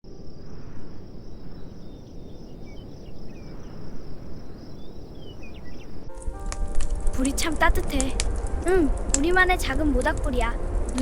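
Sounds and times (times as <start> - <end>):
cricket trill: 0.1 - 11.0.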